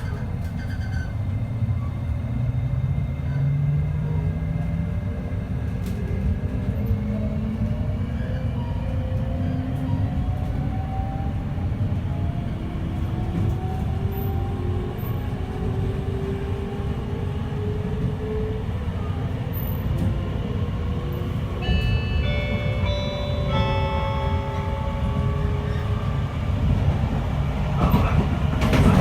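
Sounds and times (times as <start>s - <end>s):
train wheels rumbling on rail: 0.0s - 29.0s
on-board chime: 21.6s - 26.0s.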